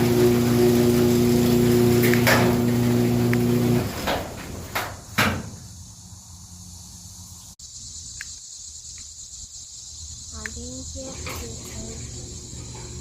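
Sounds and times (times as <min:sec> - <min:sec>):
garage door opener motor hum: 0:00.0 - 0:04.8, 0:11.1 - 0:13.0
garage door clunks: 0:00.4 - 0:05.7
crickets chirping: 0:04.6 - 0:13.0.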